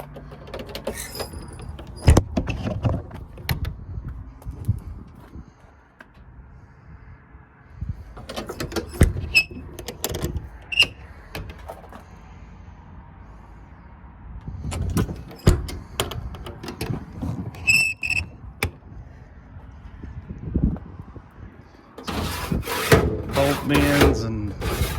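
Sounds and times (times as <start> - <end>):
metal latch clicks: 0.0 - 3.8, 8.2 - 12.0, 14.6 - 18.8
high metallic squeaks: 0.8 - 2.2, 8.2 - 11.8, 16.8 - 18.4, 22.0 - 24.9
metal doors knocking and rattling: 8.2 - 11.9, 14.6 - 18.8.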